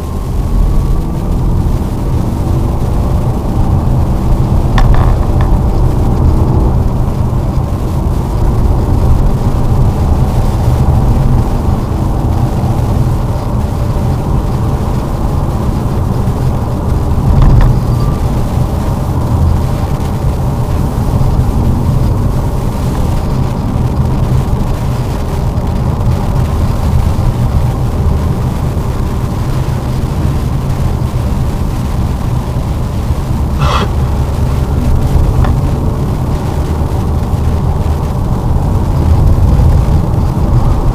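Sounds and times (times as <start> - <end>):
car engine and tyres rumbling: 0.0 - 40.9
high-pitched squeak: 33.6 - 34.0.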